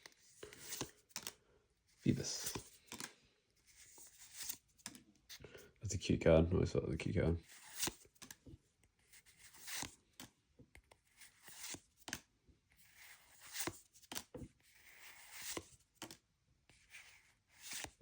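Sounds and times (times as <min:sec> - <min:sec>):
cards rustling: 0:00.0 - 0:05.0, 0:07.4 - 0:08.4, 0:09.0 - 0:12.2, 0:12.8 - 0:16.2, 0:16.8 - 0:18.0.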